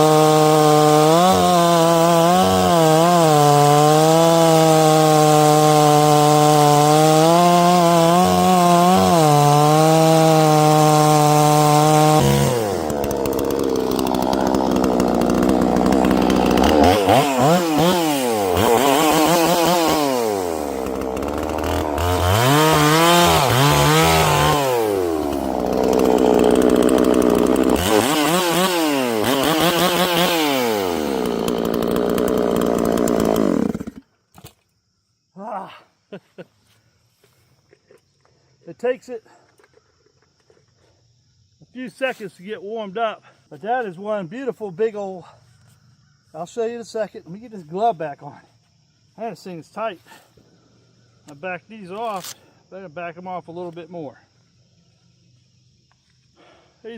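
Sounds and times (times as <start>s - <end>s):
chainsaw revving: 0.0s - 34.0s.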